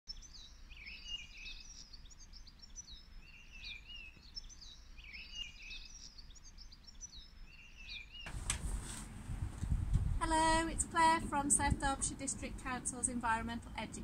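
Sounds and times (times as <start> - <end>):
songbird singing: 0.1 - 8.4
faint low rumble: 8.3 - 14.0.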